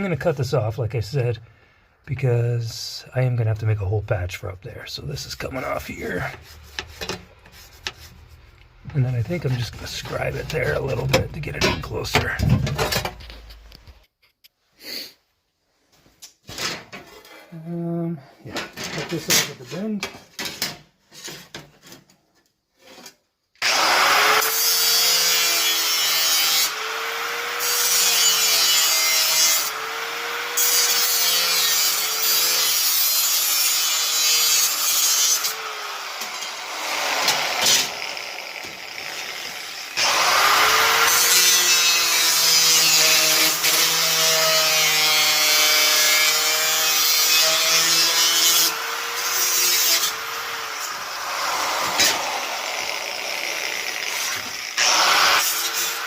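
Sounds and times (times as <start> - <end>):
power tool cutting sheet steel: 23.6 - 56.0.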